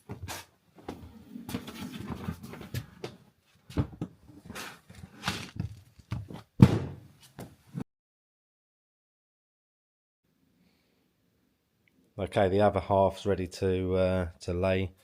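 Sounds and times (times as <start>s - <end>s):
knocks scrapes and rustles: 1.4s - 3.0s
heavy thump: 6.6s - 7.1s.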